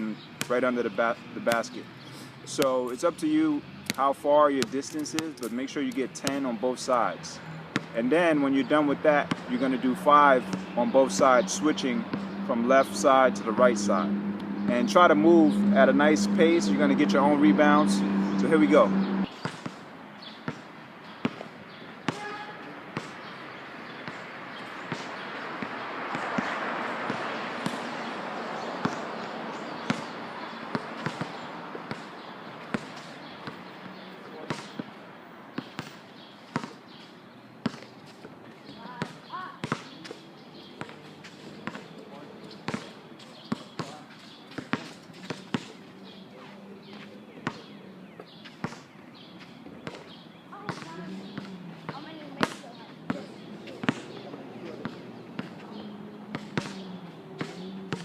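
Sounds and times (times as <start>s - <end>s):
rushing background noise: 6.9s - 21.6s
basketball bouncing: 7.6s - 8.1s, 9.2s - 15.5s, 16.4s - 19.8s, 20.4s - 23.3s, 23.9s - 35.0s, 35.6s - 36.9s, 37.6s - 38.0s, 38.8s - 40.2s, 40.8s - 45.8s, 46.9s - 47.8s, 48.5s - 48.9s, 49.8s - 58.0s.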